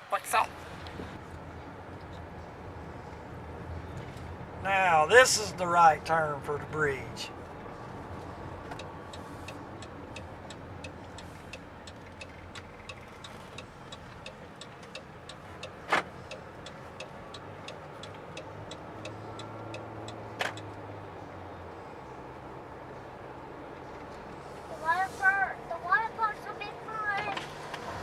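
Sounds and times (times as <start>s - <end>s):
low hum of car: 0.0s - 28.0s
turn signal ticking: 7.3s - 22.4s.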